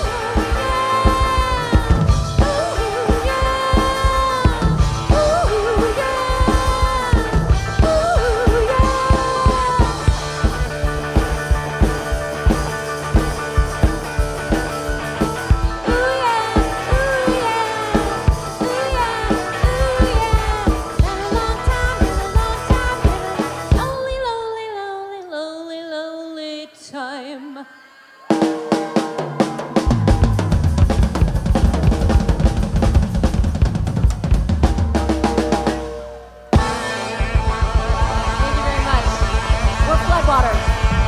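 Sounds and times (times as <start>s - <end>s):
person singing: 0.0s - 10.6s, 15.7s - 31.6s
drum beat: 0.0s - 24.0s, 28.3s - 41.0s
bass: 0.0s - 24.2s, 29.7s - 41.0s
guitar: 0.0s - 41.0s.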